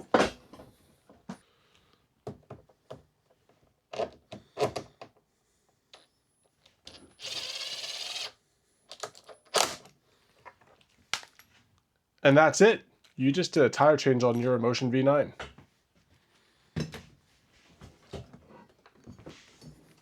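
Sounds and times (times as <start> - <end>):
knocks and clunks of handling: 2.2 - 5.2, 16.8 - 17.2
power tool driving screw: 6.9 - 9.9.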